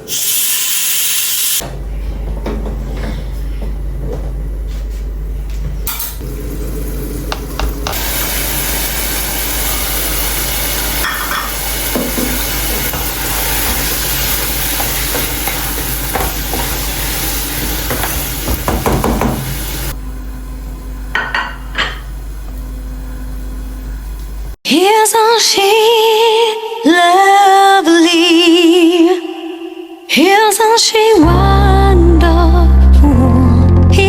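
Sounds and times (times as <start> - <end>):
pressure cooker steam hiss: 0.0 - 1.6, 7.3 - 20.0.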